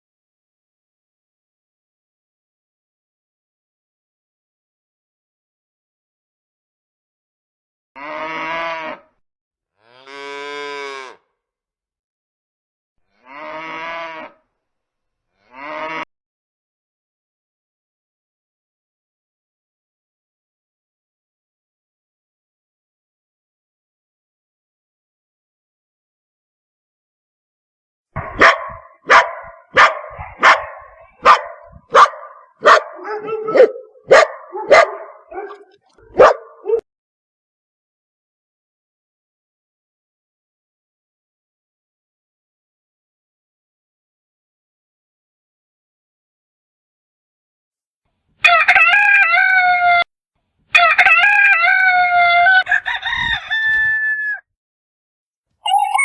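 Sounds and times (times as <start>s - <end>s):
dog barking: 28.2s - 36.8s
rooster crowing: 48.4s - 50.0s, 50.8s - 54.5s.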